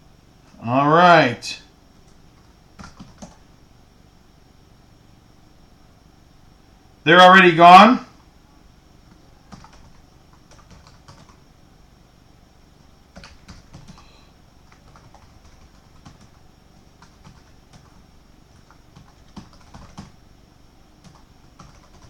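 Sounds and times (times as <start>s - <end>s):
typing on computer keyboard: 2.8s - 3.4s, 9.1s - 11.4s, 13.1s - 14.1s, 14.7s - 16.4s, 17.0s - 20.2s, 21.0s - 22.0s.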